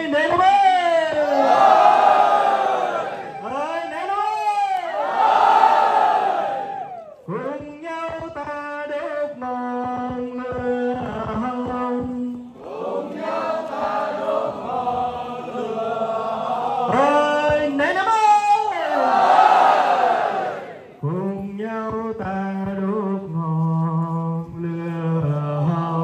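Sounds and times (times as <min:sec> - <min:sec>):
group chanting slow melody: 0:05.0 - 0:07.0, 0:12.5 - 0:17.0, 0:18.9 - 0:21.0.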